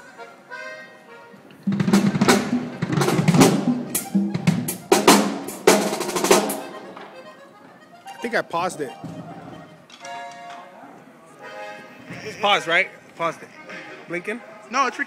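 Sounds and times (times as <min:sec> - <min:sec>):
drum kit snare and bass drum: 0:01.7 - 0:06.7.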